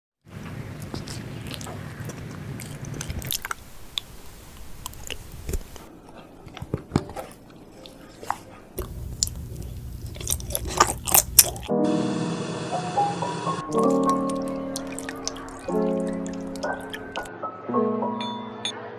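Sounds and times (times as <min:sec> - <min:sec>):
biting and chewing: 0:00.3 - 0:11.7, 0:13.7 - 0:17.3
background music: 0:11.4 - 0:18.9.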